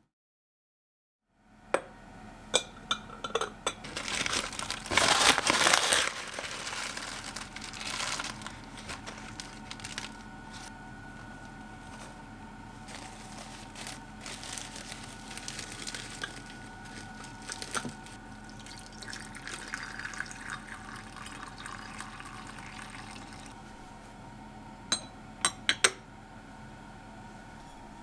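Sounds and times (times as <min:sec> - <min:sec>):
water running: 0:12.9 - 0:23.6.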